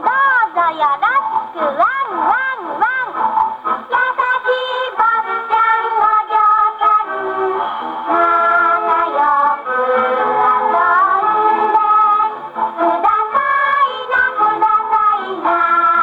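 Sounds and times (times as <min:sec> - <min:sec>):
woman singing: 0:00.0 - 0:03.3, 0:03.9 - 0:07.2, 0:10.2 - 0:16.0.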